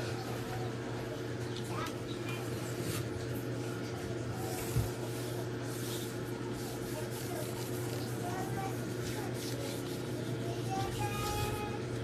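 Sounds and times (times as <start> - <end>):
hands scraping and rubbing laptop: 4.4 - 11.7.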